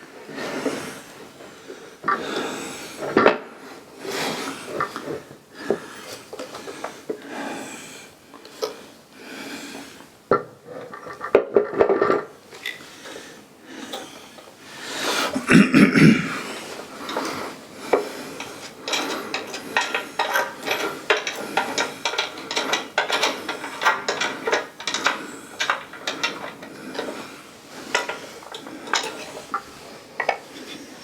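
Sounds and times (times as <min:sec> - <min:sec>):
hard parts clicking and knocking: 0:15.5 - 0:31.0.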